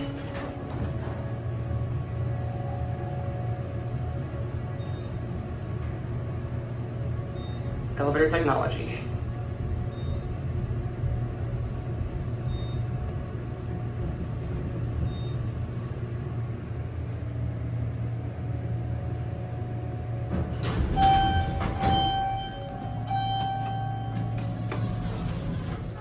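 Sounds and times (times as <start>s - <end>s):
elevator knocks: 0.0s - 1.3s, 20.3s - 26.0s
elevator low hum: 0.0s - 26.0s.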